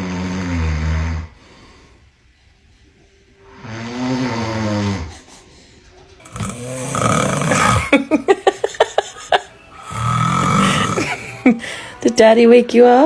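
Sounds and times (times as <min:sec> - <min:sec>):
man snoring loudly: 0:00.0 - 0:01.4, 0:03.5 - 0:05.2, 0:06.2 - 0:08.2, 0:09.7 - 0:11.3.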